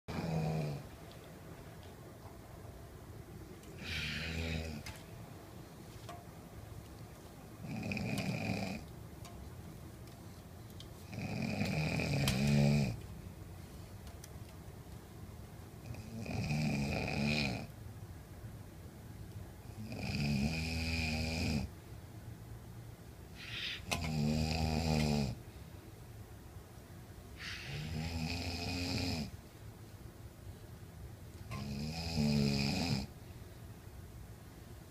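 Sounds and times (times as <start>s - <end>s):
man snoring: 0.1s - 0.9s, 3.8s - 4.8s, 7.6s - 8.9s, 11.1s - 13.0s, 15.9s - 17.7s, 19.7s - 21.7s, 23.4s - 25.4s, 27.4s - 29.3s, 31.5s - 33.1s
quiet breathing: 3.6s - 5.9s, 10.1s - 14.1s, 23.3s - 24.1s, 27.3s - 28.1s.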